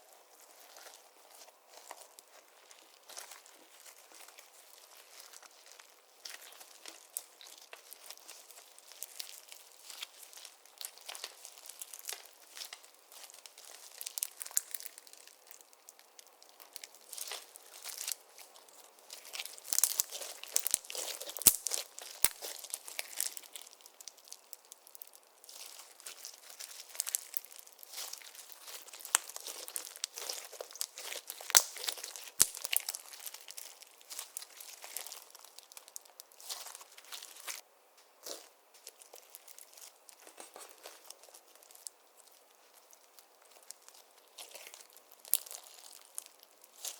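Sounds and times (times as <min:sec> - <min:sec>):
slime crackling and popping: 0:00.3 - 0:37.6, 0:38.2 - 0:46.9.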